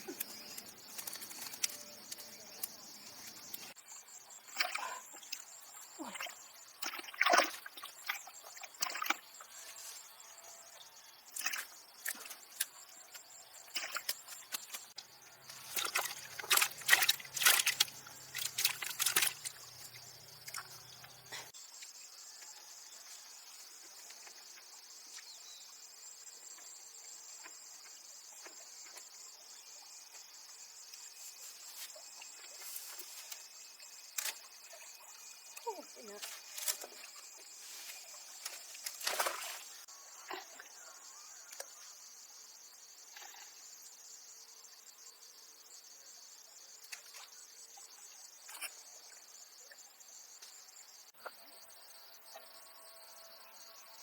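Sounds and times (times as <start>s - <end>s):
water splashing and trickling: 0.1s - 9.8s, 11.3s - 21.6s, 31.0s - 40.8s, 46.8s - 49.8s.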